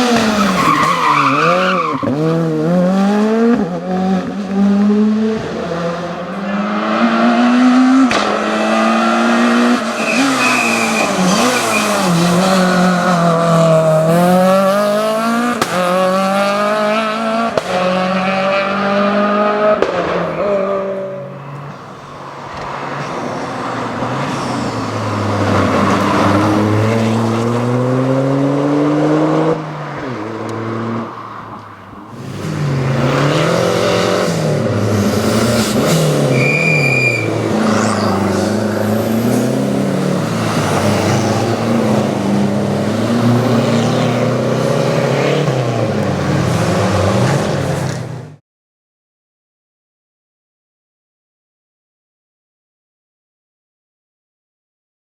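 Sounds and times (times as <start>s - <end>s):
rally car engine revving: 0.0s - 48.4s
short high squeal: 36.3s - 37.4s.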